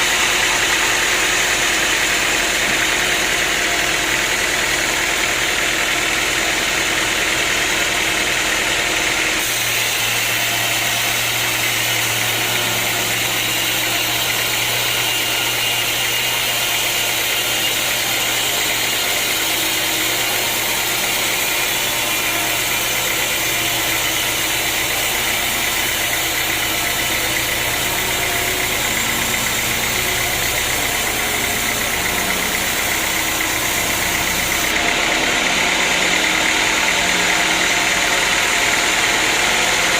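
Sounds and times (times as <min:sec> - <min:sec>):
sawmill machinery drone: 0:00.0 - 0:39.9
steady low hum: 0:23.7 - 0:37.0.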